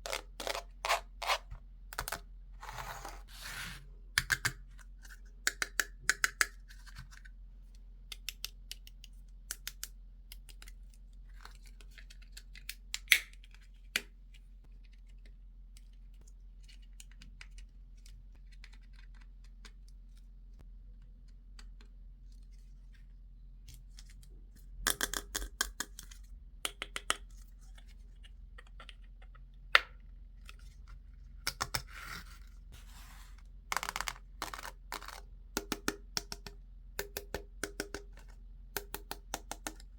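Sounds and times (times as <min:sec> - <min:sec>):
toy pieces clicking and scratching: 0:33.7 - 0:35.3.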